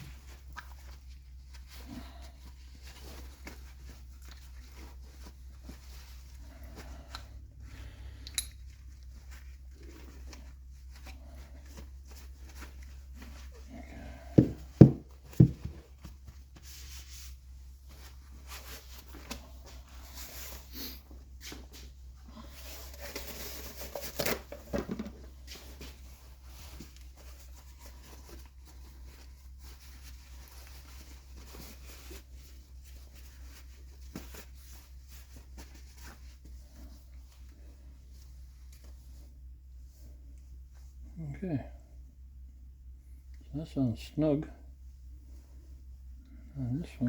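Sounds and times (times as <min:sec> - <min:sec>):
rustling and scraping: 0:00.0 - 0:41.2
sharp knocks on workbench: 0:14.4 - 0:15.6.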